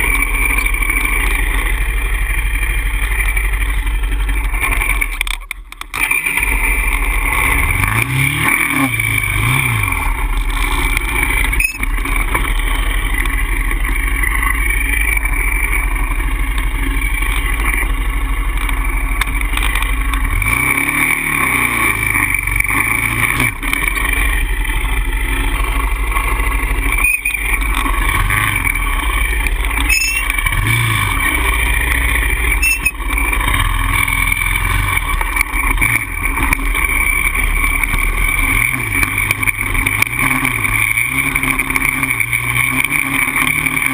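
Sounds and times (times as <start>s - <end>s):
quad bike engine running: 0.0s - 43.9s.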